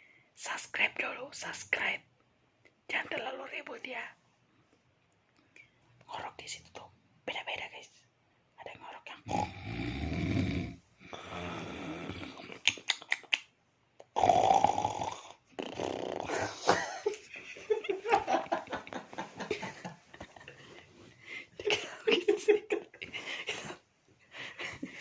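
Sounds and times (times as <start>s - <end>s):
person snoring loudly: 9.2s - 12.6s, 14.2s - 16.7s.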